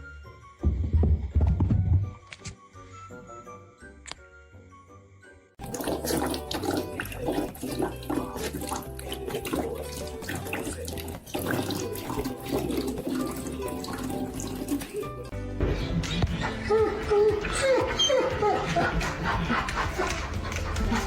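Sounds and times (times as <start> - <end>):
background music: 0.0 - 21.0
water running from a tap: 5.6 - 15.3.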